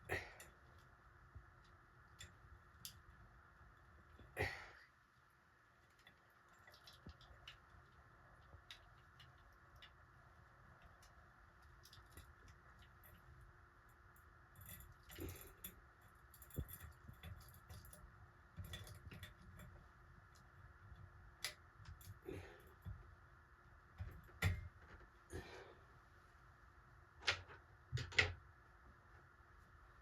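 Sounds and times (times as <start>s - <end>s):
small metal parts clicking: 10.7s - 19.8s.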